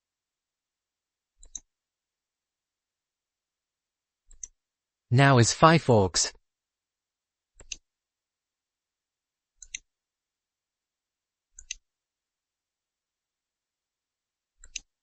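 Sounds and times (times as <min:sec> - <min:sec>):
computer mouse clicks: 0:01.4 - 0:01.7, 0:04.3 - 0:04.6, 0:07.6 - 0:07.8, 0:09.6 - 0:09.9, 0:11.6 - 0:11.8, 0:14.6 - 0:14.9.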